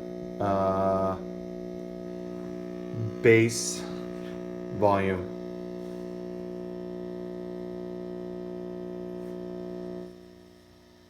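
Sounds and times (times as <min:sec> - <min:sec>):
guitar amp mains hum: 0:00.0 - 0:11.0.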